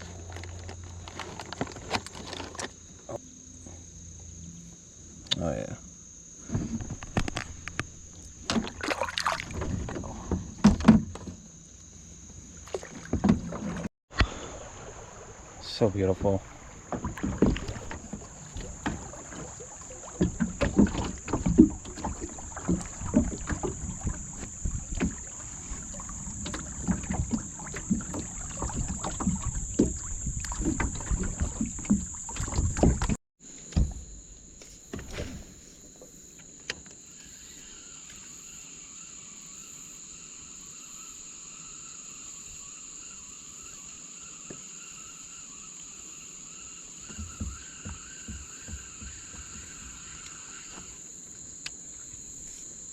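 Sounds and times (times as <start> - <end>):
insect chorus: 0.0 - 52.9
knocks against kayak hull: 26.4 - 34.1.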